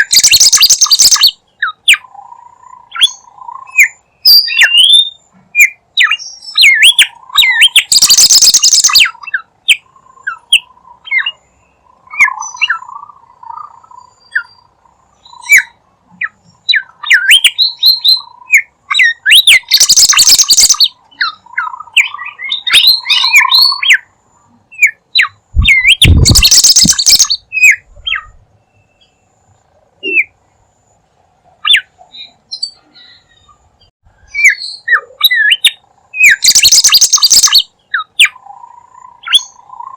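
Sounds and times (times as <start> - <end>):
bird chirps and whistles: 0.0 - 2.0, 2.9 - 11.4, 15.2 - 24.1, 24.8 - 29.1, 34.2 - 38.4, 39.2 - 39.6
harsh bird screeches: 0.1 - 1.2, 7.6 - 9.0, 19.3 - 20.9, 25.6 - 27.8, 36.3 - 37.6.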